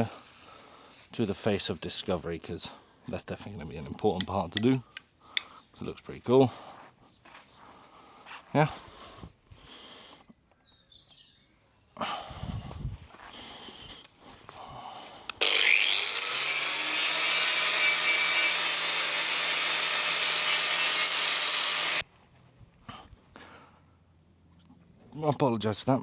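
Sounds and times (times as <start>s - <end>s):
grinder grinding metal: 15.4s - 22.0s.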